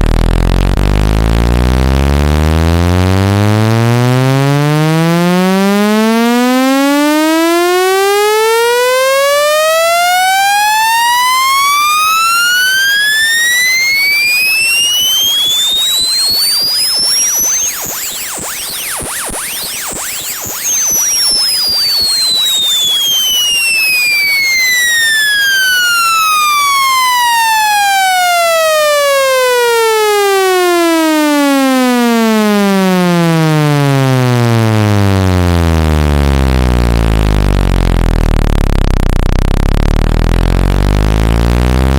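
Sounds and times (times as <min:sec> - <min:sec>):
rising synthetic test tone: 0:00.0 - 0:41.9
high warbling tones: 0:10.5 - 0:27.8.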